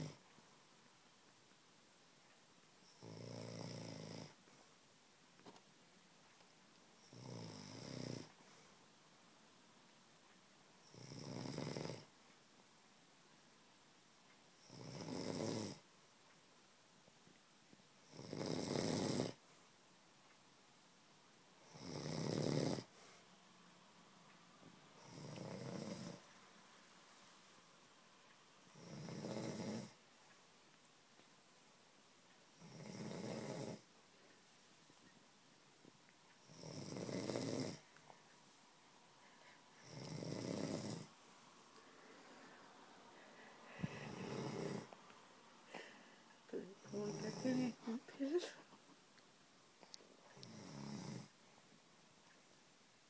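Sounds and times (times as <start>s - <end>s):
person snoring: 14.6s - 15.8s, 18.1s - 19.4s, 21.6s - 22.9s, 25.0s - 26.2s, 28.7s - 30.0s, 32.6s - 33.8s, 36.4s - 37.8s, 39.4s - 41.1s, 43.3s - 45.0s, 45.7s - 48.0s, 50.3s - 51.3s.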